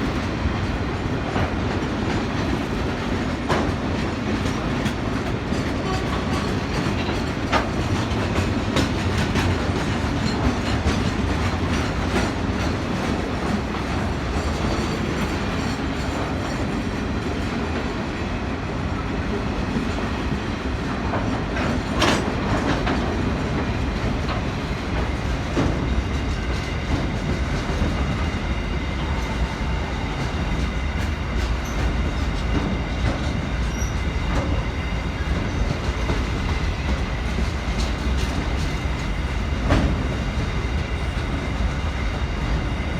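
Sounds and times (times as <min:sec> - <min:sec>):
train rumble: 0:00.0 - 0:42.9
train wheels clicking over rail joints: 0:00.1 - 0:18.1, 0:19.5 - 0:42.9
faint high wheel squeal: 0:33.7 - 0:34.2.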